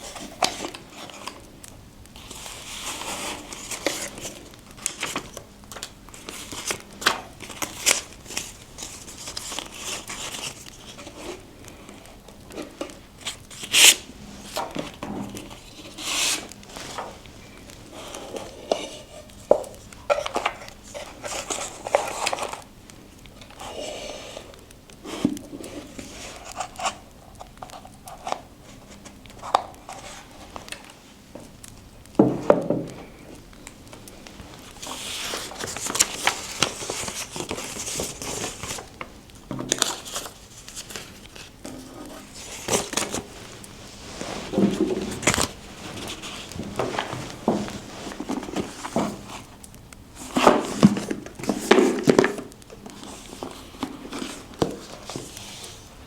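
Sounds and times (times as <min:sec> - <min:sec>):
paper rustling and crinkling: 0:00.0 - 0:56.0.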